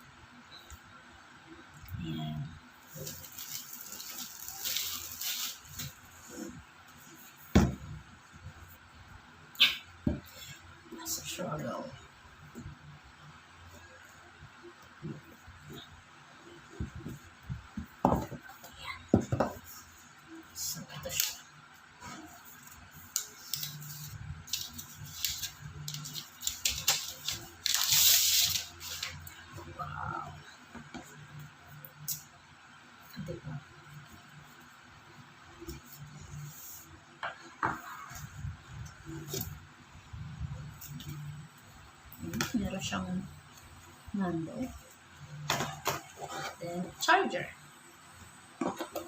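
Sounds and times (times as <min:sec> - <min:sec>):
packaging rustling and crinkling: 0:02.9 - 0:06.0, 0:23.1 - 0:29.2.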